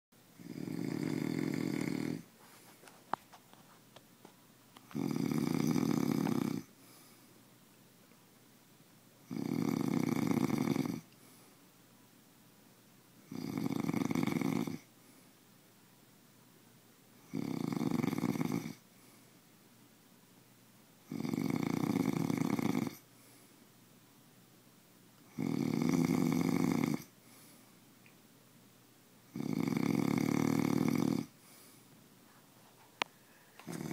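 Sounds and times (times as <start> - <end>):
quiet breaths: 0.2 - 33.9
person snoring: 0.4 - 2.3, 4.8 - 6.7, 9.3 - 11.1, 13.3 - 14.9, 17.2 - 18.8, 21.1 - 23.0, 25.3 - 27.1, 29.3 - 31.4, 33.5 - 33.9.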